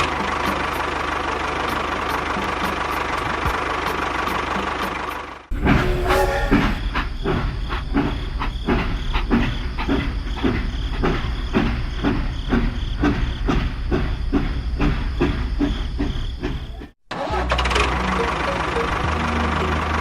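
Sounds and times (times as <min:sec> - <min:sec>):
machine knocking clack: 0:04.2 - 0:17.0.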